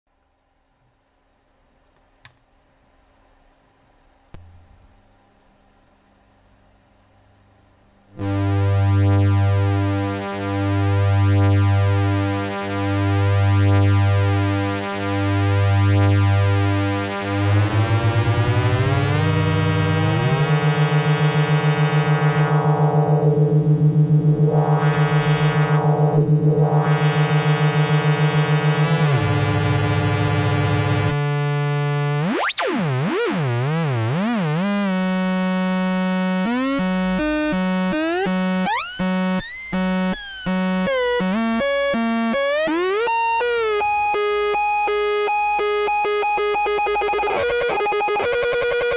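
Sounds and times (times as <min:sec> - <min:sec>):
buzzy synthesizer drone: 0:08.2 - 0:48.9
synthesizer squeal swooping: 0:15.8 - 0:23.2, 0:32.2 - 0:35.4, 0:36.4 - 0:48.9.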